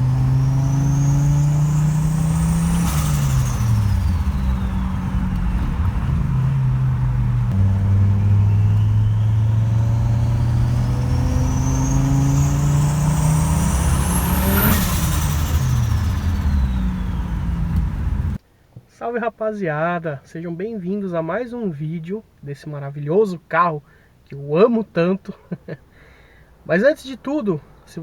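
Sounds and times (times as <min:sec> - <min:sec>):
car engine accelerating hard: 0:00.0 - 0:18.4
turbo whistle: 0:07.6 - 0:18.3
rush of air and turbo flutter: 0:08.4 - 0:18.4.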